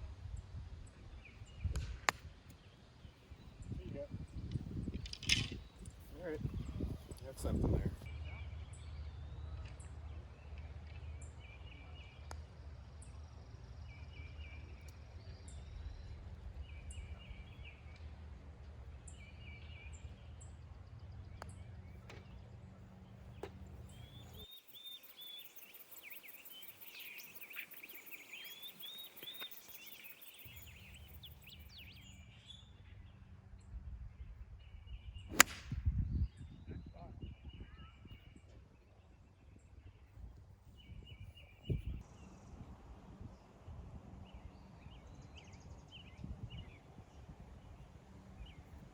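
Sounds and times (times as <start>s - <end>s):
wind rumble on microphone: 0.0s - 2.4s, 3.0s - 8.8s, 33.0s - 48.9s
birds singing: 2.5s - 33.3s, 34.1s - 43.6s, 44.2s - 48.9s
sharp crack: 35.3s - 35.8s.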